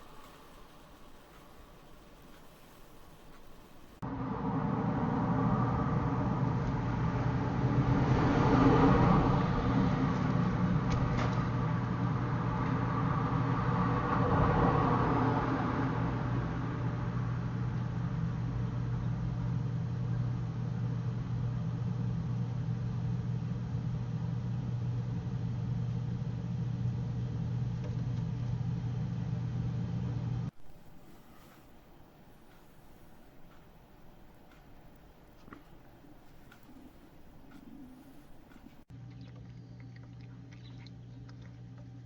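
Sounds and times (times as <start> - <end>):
low mechanical hum: 0.0 - 42.0.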